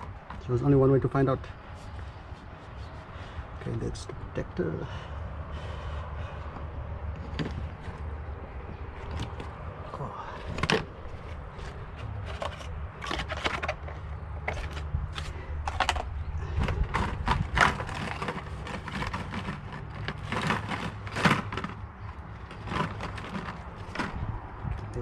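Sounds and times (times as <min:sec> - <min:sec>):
plastic parts clicking and scraping: 0:06.1 - 0:25.0.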